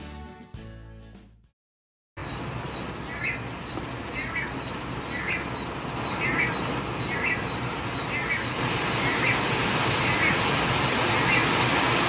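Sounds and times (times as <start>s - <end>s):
bird chirping: 2.2s - 11.6s
steady background hiss: 2.3s - 12.0s.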